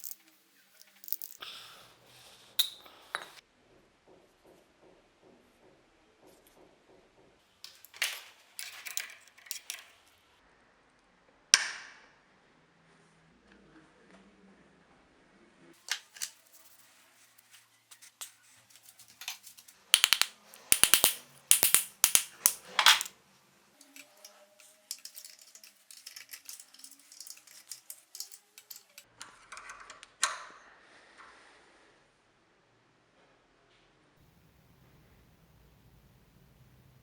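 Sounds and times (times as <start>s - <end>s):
metal parts and hand tools clicking: 0.0s - 1.4s, 7.7s - 9.9s, 17.4s - 23.1s, 23.8s - 29.1s.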